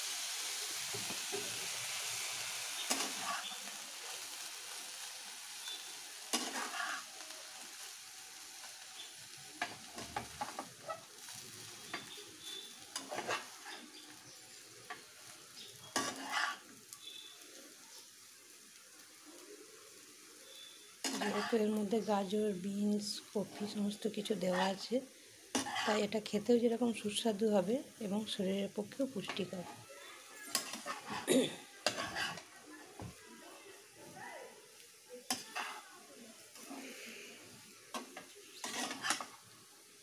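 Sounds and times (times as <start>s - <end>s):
noodles sizzling in a hot pan: 0.0s - 40.0s.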